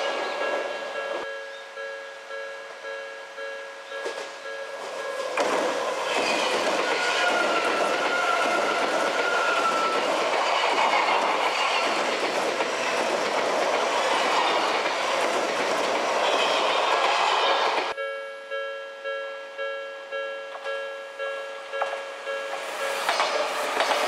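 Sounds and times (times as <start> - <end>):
electric train running past: 0.0 - 18.0, 20.6 - 24.0
ringing tone: 0.4 - 5.2, 18.0 - 23.0
wheels clacking over rail joints: 4.0 - 18.0, 23.0 - 24.0.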